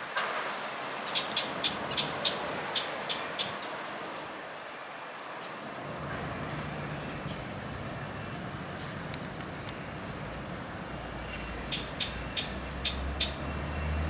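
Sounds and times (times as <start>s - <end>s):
low traffic hum: 5.6s - 14.0s
high thin bird calls: 5.9s - 14.0s
sharp ticks: 6.0s - 13.6s.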